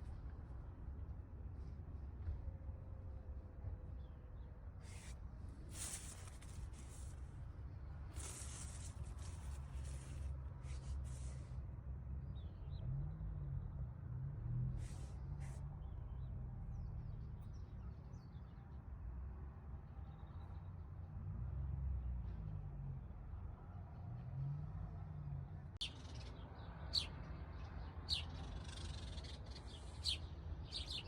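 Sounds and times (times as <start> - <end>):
mint leaves rustling: 5.7 - 7.3, 8.1 - 11.4.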